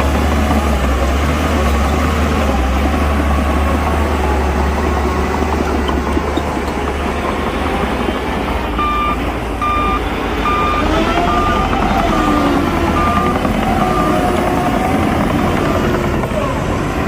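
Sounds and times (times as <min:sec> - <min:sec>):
heavy machine engine running: 0:00.0 - 0:17.0
reversing alarm beeps: 0:08.8 - 0:14.5.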